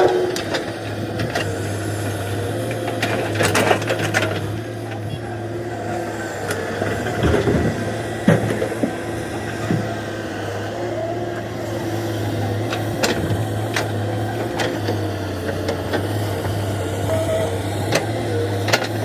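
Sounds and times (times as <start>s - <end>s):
machine clanks and knocks: 0.0s - 1.5s
excavator diesel engine running: 0.0s - 19.0s.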